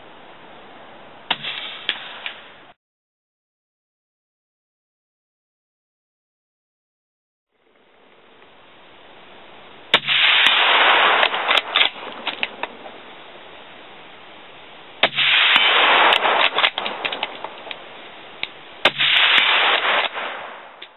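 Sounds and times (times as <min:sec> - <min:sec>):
suppressed rifle shots: 0:01.3 - 0:02.5, 0:09.9 - 0:13.0, 0:15.0 - 0:17.8, 0:18.8 - 0:20.9
crackling echoes: 0:01.3 - 0:02.8, 0:09.8 - 0:20.9.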